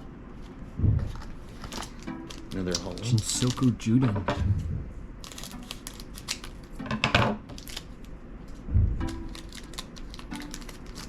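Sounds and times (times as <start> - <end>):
trading cards handled: 1.0 - 3.7, 5.2 - 6.7, 7.5 - 11.0.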